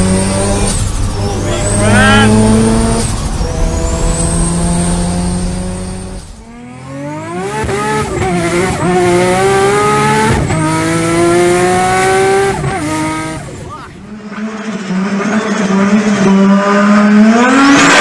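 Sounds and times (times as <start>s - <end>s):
car engine accelerating hard: 0.0s - 18.0s.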